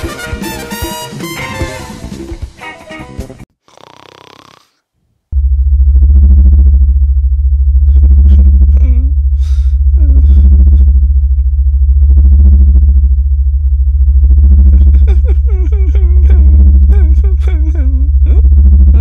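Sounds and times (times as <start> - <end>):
pulsing electronic drone: 5.4 - 19.0.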